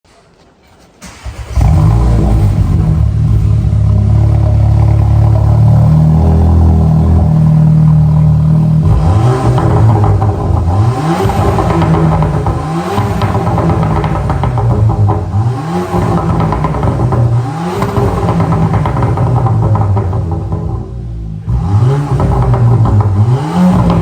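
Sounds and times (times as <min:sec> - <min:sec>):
car engine revving: 0:01.0 - 0:24.0
car engine starting and running: 0:01.0 - 0:24.0.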